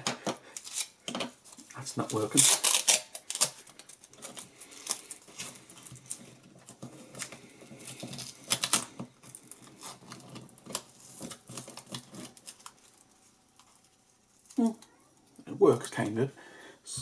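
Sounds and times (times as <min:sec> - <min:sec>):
velcro strap clicks and rustling: 0:00.6 - 0:01.0, 0:02.0 - 0:06.2.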